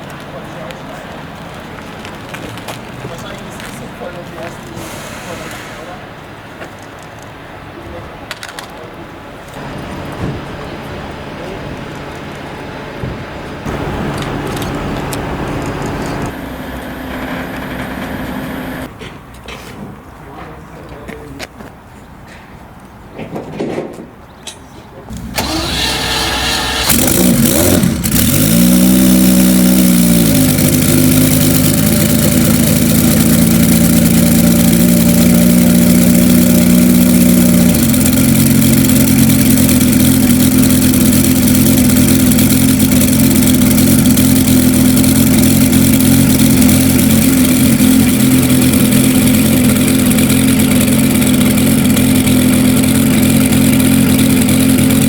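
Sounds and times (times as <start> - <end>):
car engine revving and idling: 9.6 - 18.9, 25.1 - 55.0
starter motor cranking: 25.1 - 55.0.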